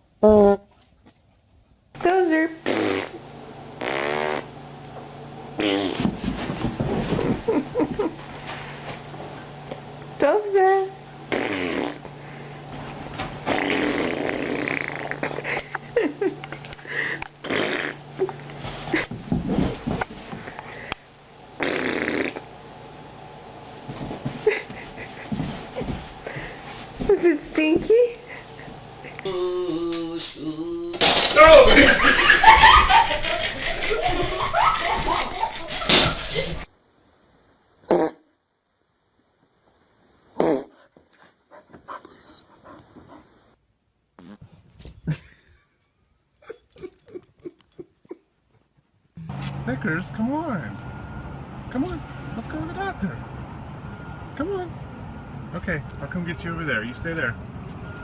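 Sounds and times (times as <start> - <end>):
dog snoring and snorting: 13.4 - 15.4
dog crying: 29.3 - 36.6
short squeaky noises: 29.3 - 36.7
soft dog sounds: 40.8 - 43.6.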